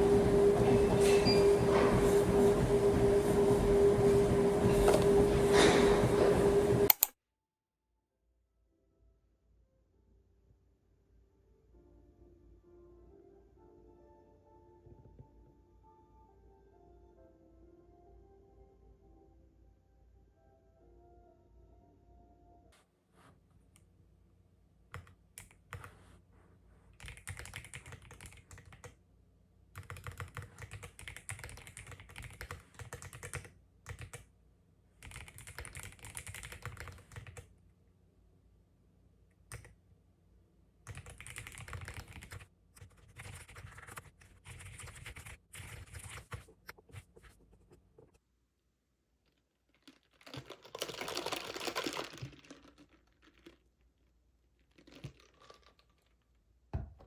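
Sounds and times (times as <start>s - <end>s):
computer keyboard typing: 6.9s - 7.2s, 27.0s - 29.0s, 29.8s - 34.3s, 35.0s - 37.5s, 39.5s - 39.7s, 40.9s - 46.8s, 50.2s - 53.6s.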